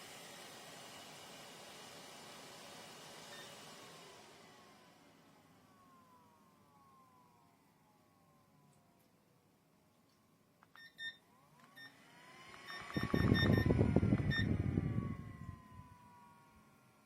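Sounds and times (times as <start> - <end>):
short electronic beeps: 12.7 - 14.5
fan airflow buffeting microphone: 12.8 - 16.4.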